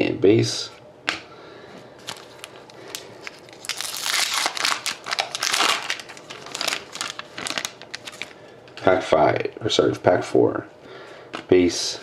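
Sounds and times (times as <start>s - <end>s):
foil wrapper crinkling: 2.0s - 8.5s.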